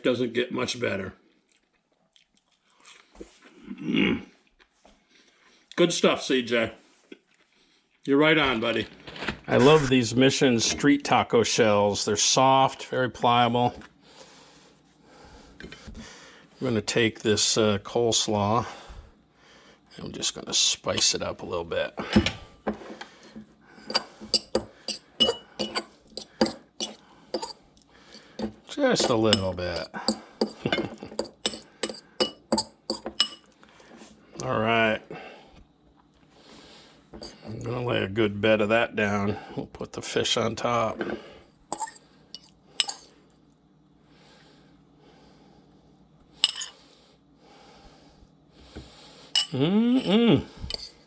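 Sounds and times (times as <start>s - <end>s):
soft rustling of food: 1.2s - 3.7s, 6.8s - 9.9s
utensil clinking against bowl: 23.8s - 33.5s, 41.7s - 43.1s, 46.4s - 46.8s, 49.4s - 51.0s.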